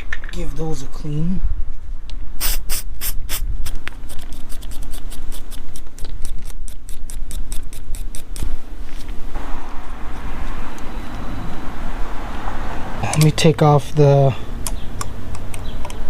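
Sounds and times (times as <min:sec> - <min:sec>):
steady hiss: 0:02.4 - 0:03.8, 0:06.8 - 0:14.6.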